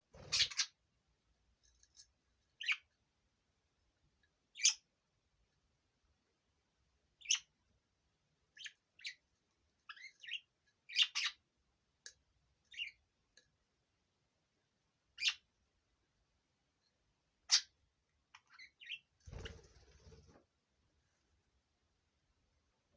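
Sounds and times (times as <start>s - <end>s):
budgerigars chirping: 0.2s - 0.7s.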